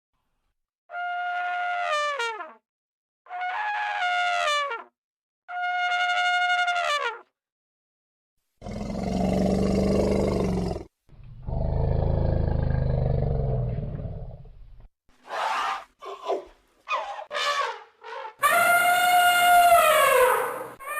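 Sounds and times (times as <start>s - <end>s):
elephant low roars: 8.6s - 14.5s
elephant trumpeting: 15.3s - 20.9s.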